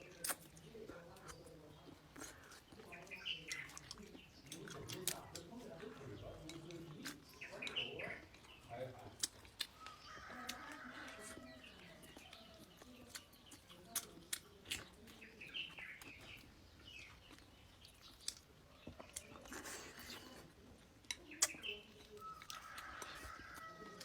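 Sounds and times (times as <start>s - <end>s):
birds chirping: 0.0s - 24.0s
chewing and crunching: 0.0s - 24.0s.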